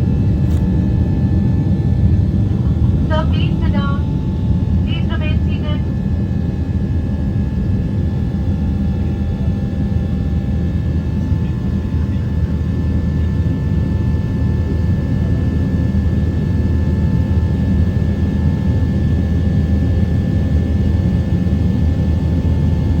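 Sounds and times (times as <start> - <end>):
airliner engine deep rumble: 0.0 - 23.0.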